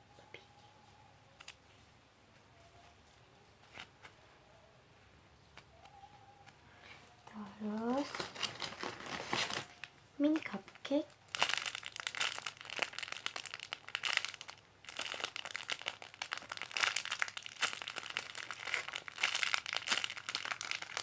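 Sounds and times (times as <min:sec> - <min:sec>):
plastic packaging crinkling: 0:07.2 - 0:21.0.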